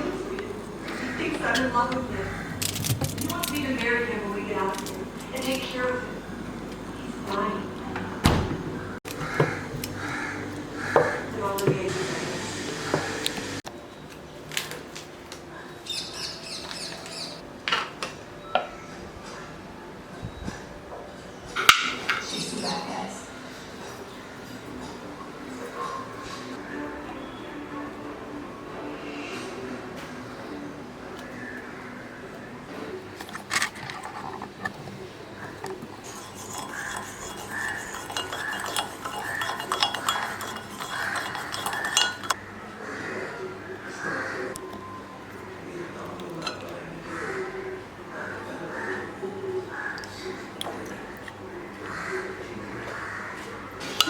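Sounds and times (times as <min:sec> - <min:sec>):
bird chirping: 0:15.8 - 0:17.4
cutlery clinking on dishes: 0:36.0 - 0:42.4, 0:46.3 - 0:46.8.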